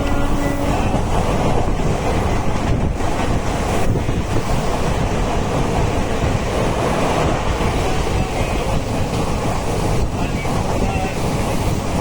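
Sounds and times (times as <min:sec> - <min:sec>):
train running: 0:00.0 - 0:12.0.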